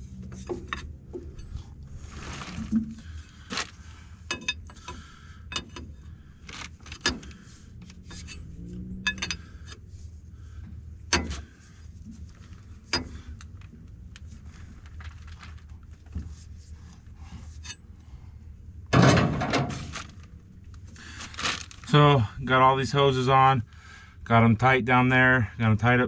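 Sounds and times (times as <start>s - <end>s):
wrench clinking on metal fittings: 4.3s - 5.9s, 9.0s - 9.5s.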